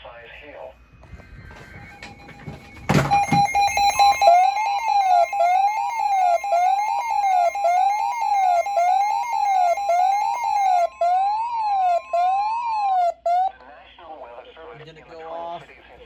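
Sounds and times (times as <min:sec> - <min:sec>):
faint steady high tone: 0:00.8 - 0:13.6
electronic alarm wailing: 0:00.9 - 0:13.6.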